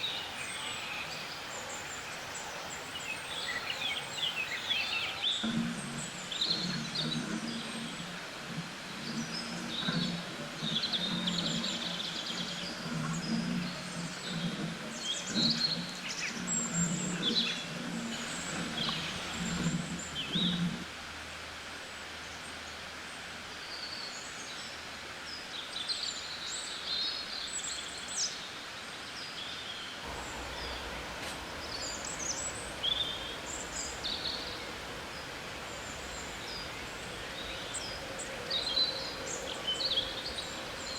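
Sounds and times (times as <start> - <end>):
steady background hiss: 0.0 - 40.9
birds chirping and singing: 8.9 - 20.8, 30.1 - 40.9
low pulsing hum: 30.1 - 40.9.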